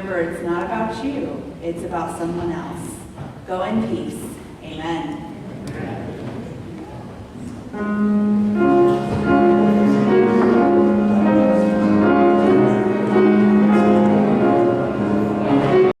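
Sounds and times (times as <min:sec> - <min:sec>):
keyboard instrument music: 0:07.8 - 0:16.0.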